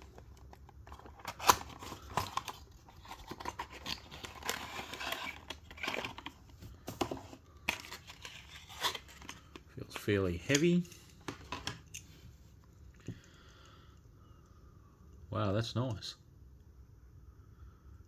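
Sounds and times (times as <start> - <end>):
plastic packaging snapping: 0.0 - 6.3
packaging rustling and crinkling: 0.0 - 10.1.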